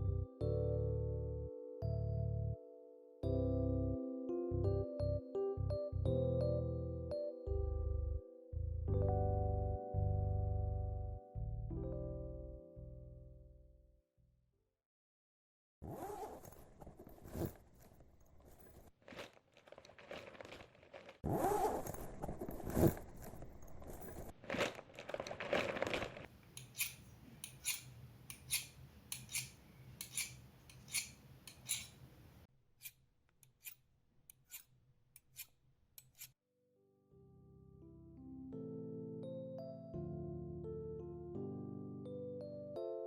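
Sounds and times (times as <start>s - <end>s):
crisp rustling and crunching: 16.6s - 26.3s.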